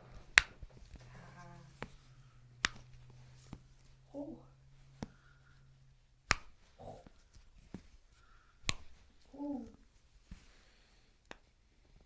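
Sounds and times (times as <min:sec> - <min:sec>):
person humming mm: 0:01.0 - 0:01.9, 0:04.1 - 0:04.6, 0:09.3 - 0:09.8.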